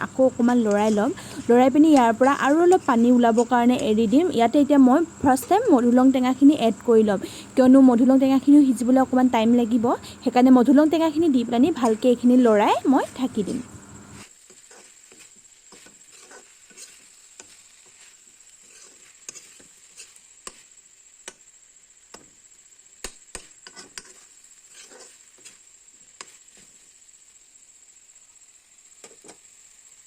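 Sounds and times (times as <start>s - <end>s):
spatula tapping a pan: 0.0s - 4.4s, 11.6s - 12.2s, 12.8s - 18.1s, 18.7s - 21.4s, 23.0s - 24.2s
faint high-pitched whine: 0.0s - 14.2s.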